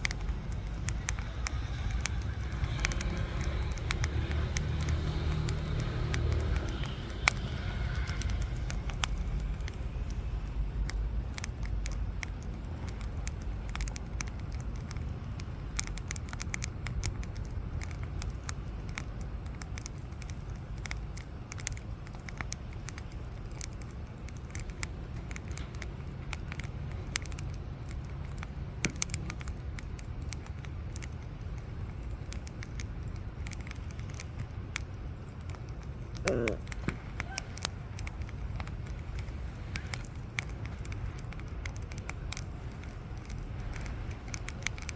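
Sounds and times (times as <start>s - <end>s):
campfire crackling and popping: 0.0s - 44.9s
steady low rumble: 0.0s - 44.9s.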